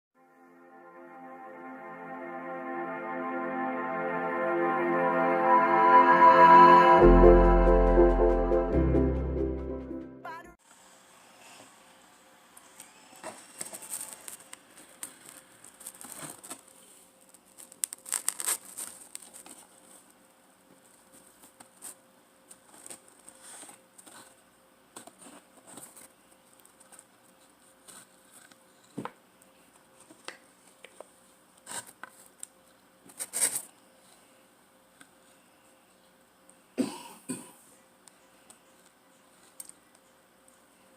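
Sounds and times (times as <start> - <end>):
packaging crinkling and tearing: 13.6 - 20.0.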